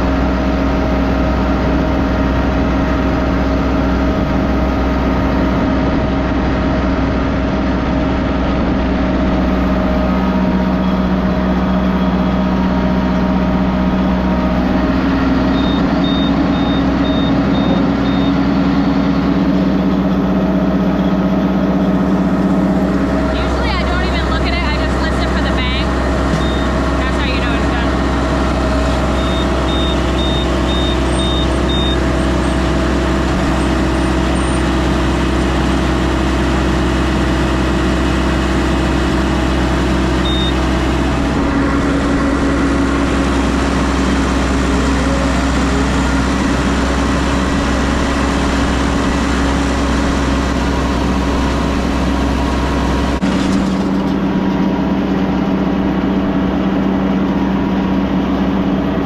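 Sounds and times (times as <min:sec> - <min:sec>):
machine engine running: 0:00.0 - 0:59.0
short high beeps: 0:26.4 - 0:26.8, 0:29.2 - 0:32.0, 0:40.2 - 0:40.6.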